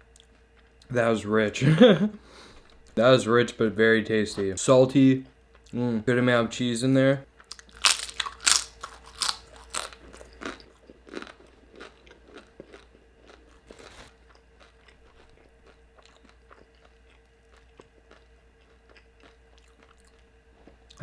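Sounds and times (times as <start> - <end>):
crunching fried food: 7.4 - 21.0.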